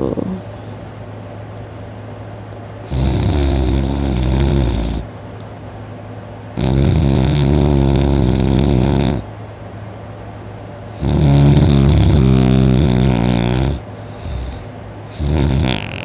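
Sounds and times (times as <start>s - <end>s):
steady low hum: 0.0s - 16.0s
person snoring loudly: 2.8s - 5.1s, 6.6s - 9.3s, 10.9s - 16.0s.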